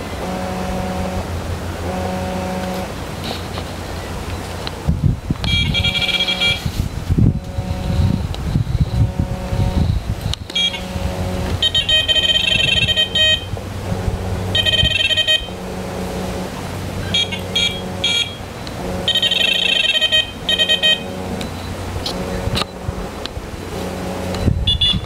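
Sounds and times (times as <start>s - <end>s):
electronic bite alarm beeping: 5.4s - 6.7s, 7.3s - 13.5s, 14.5s - 15.6s, 17.1s - 22.8s, 24.3s - 25.0s.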